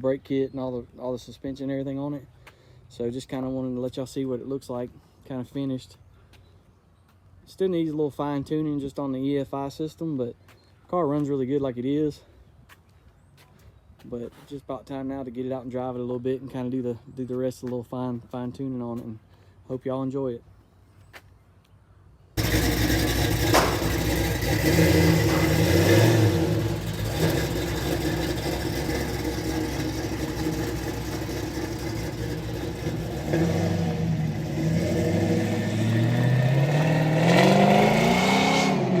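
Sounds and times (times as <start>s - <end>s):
car engine revving: 22.4s - 39.0s.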